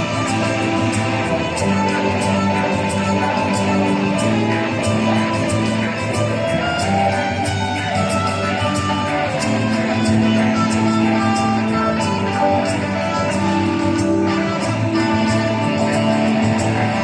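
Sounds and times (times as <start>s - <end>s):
guitar: 0.0s - 17.0s
live band playing: 0.0s - 17.0s.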